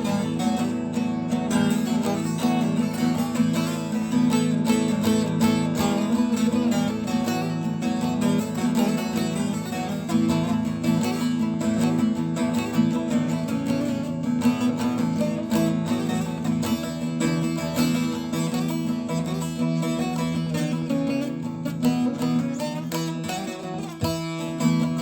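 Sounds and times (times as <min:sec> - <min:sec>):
plucked string instrument: 0:00.0 - 0:25.0.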